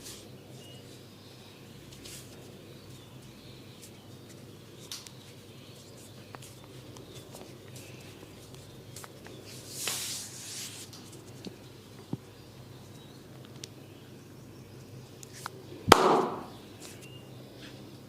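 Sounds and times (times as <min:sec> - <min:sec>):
hands rubbing skin: 0:03.9 - 0:11.4
loud sharp smack: 0:15.9 - 0:16.5.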